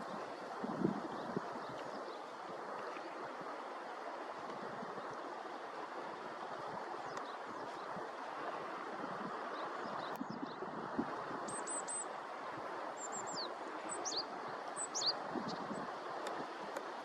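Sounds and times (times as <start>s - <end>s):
running water rushing: 0.0s - 17.0s
faint bird chirps: 13.0s - 15.8s.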